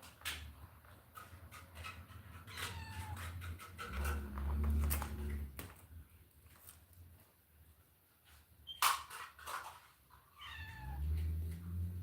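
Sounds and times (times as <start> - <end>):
cat meowing: 2.5 - 3.4, 10.3 - 11.2.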